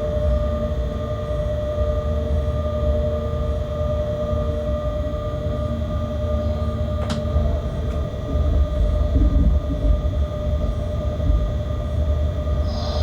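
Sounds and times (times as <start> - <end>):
locomotive low rumble: 6.2 - 13.0
electrical hum: 12.2 - 13.0.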